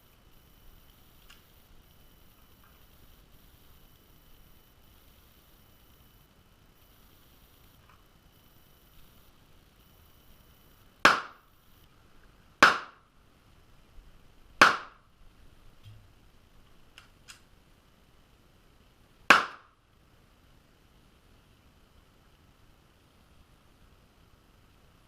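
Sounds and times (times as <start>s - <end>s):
faint clicks: 0.8s - 3.5s
muffled pistol shots: 11.0s - 11.4s, 12.6s - 13.0s, 14.6s - 15.0s, 19.3s - 19.7s.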